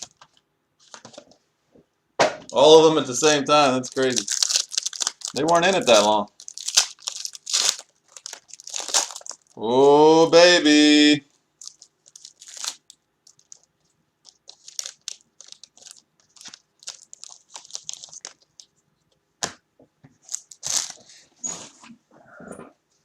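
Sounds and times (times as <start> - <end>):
card packaging crinkling: 0.0 - 1.2, 3.1 - 9.6, 11.6 - 18.7, 20.2 - 21.0.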